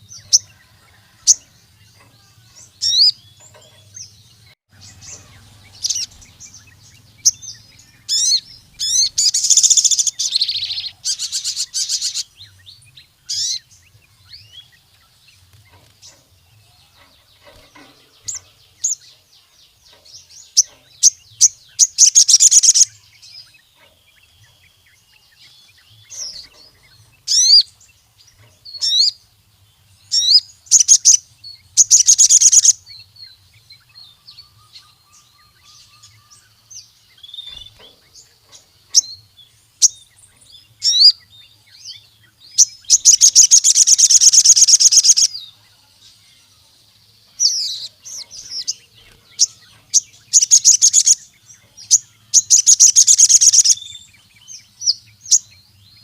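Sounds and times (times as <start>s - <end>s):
bird chirps and buzzy trills: 0.0s - 56.0s.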